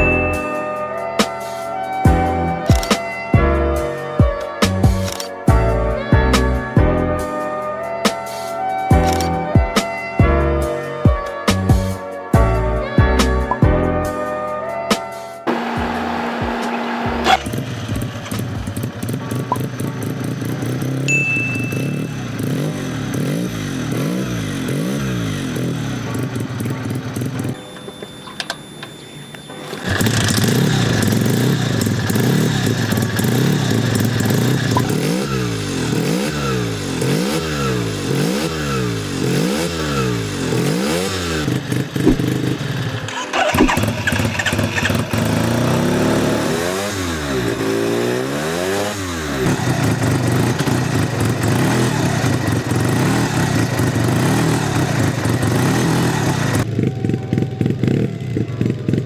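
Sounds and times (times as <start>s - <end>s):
clicks: 2.7s - 3.0s, 5.0s - 5.4s, 27.7s - 30.0s
rotary engine revving: 9.0s - 9.4s, 15.5s - 27.8s, 29.5s - 56.9s.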